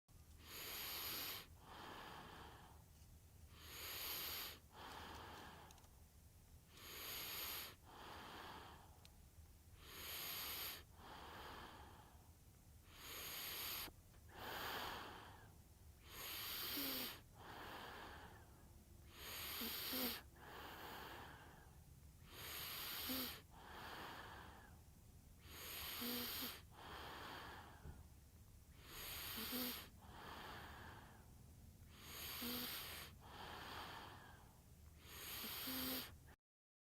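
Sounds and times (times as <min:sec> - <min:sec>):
baby breathing and snoring: 0:00.4 - 0:02.8, 0:03.5 - 0:05.8, 0:06.7 - 0:09.0, 0:09.8 - 0:12.2, 0:12.9 - 0:24.8, 0:25.4 - 0:28.0, 0:28.7 - 0:31.3, 0:31.9 - 0:36.4.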